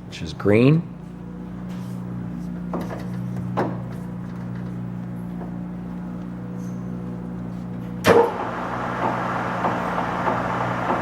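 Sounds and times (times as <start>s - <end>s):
lathe humming: 8.1s - 11.0s.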